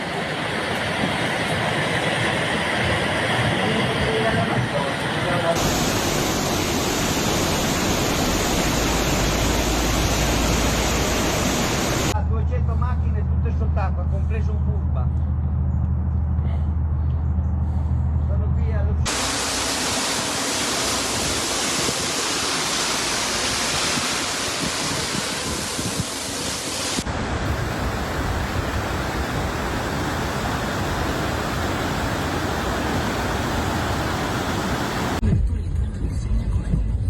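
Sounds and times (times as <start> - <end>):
floodwater rushing: 0.0 - 12.2, 19.1 - 35.2.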